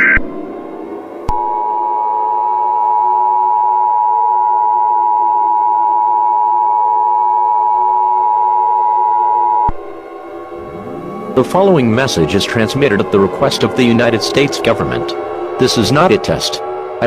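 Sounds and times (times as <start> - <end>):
synthesizer drone: 0.0 - 3.4, 8.4 - 17.0
two-tone alert alarm: 1.4 - 16.8.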